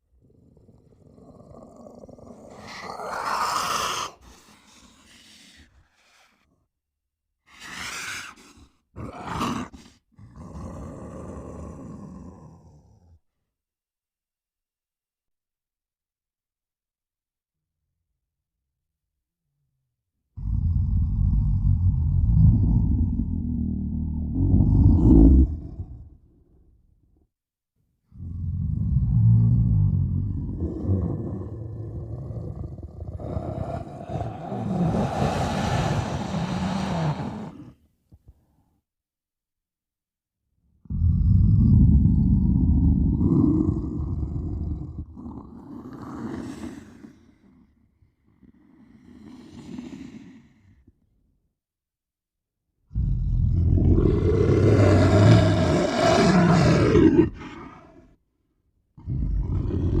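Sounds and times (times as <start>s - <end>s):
man growling like monster: 0.2s - 4.2s, 9.0s - 13.0s, 20.4s - 26.3s, 28.2s - 37.8s, 40.8s - 47.0s, 52.9s - 58.1s, 59.0s - 60.0s.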